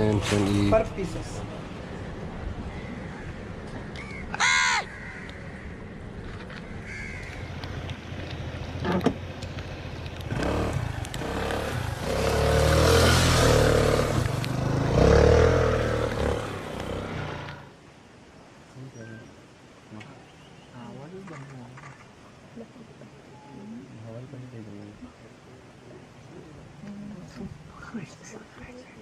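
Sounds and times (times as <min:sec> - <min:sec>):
crow cawing: 0:02.7 - 0:05.8, 0:06.6 - 0:07.6
vehicle engine running: 0:07.4 - 0:17.6.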